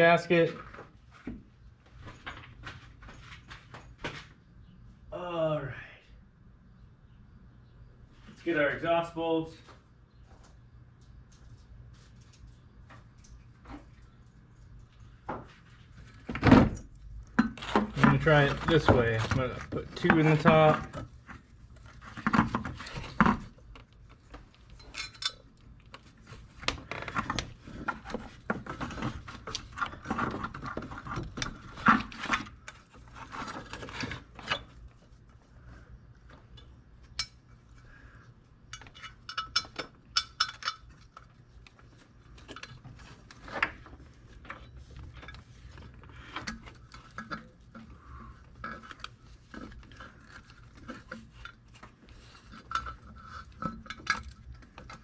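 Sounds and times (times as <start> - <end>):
metal bolts and tools clinking: 24.5 - 26.0, 36.5 - 37.5, 38.7 - 41.4, 48.5 - 55.0.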